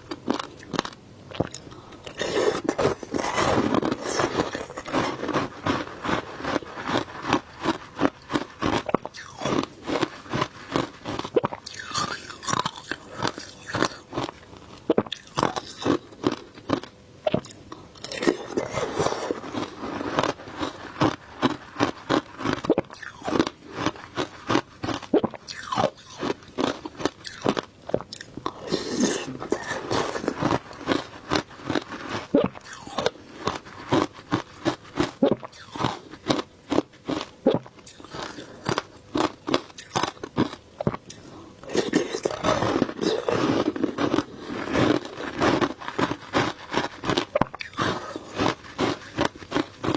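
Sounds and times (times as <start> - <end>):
shaved ice crunching: 2.1 - 14.3, 18.0 - 23.9, 28.4 - 33.1.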